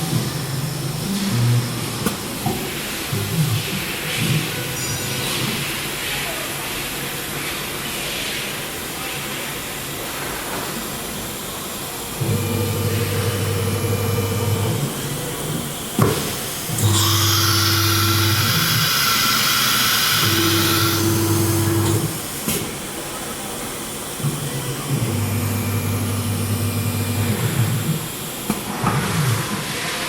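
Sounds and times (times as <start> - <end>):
loud hiss: 7.7 - 28.7
steady high whine: 12.0 - 22.4, 23.4 - 28.6
machine motion hum: 12.2 - 16.0, 16.6 - 22.5, 24.2 - 29.6.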